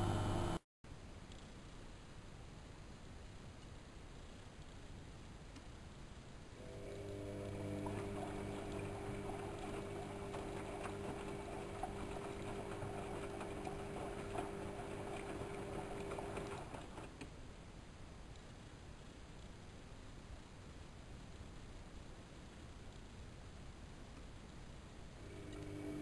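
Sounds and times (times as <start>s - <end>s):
washing machine motor hum: 0.0s - 0.6s, 6.6s - 17.2s, 25.2s - 26.0s
laundry and water sloshing: 7.0s - 17.2s.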